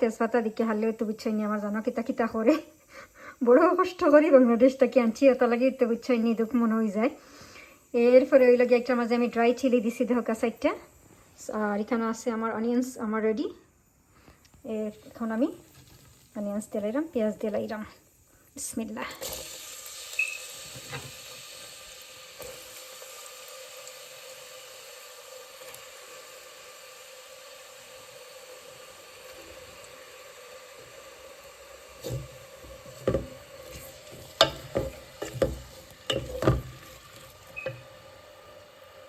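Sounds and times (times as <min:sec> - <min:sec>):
onions sizzling in a pan: 0:00.0 - 0:39.0
utensil knocking against a pan: 0:32.9 - 0:33.4, 0:34.2 - 0:36.9.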